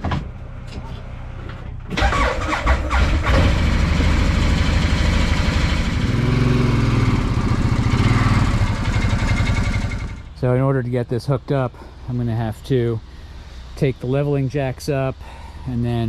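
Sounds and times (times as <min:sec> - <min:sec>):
engine cranking and starting: 0:01.9 - 0:06.2, 0:07.9 - 0:10.3.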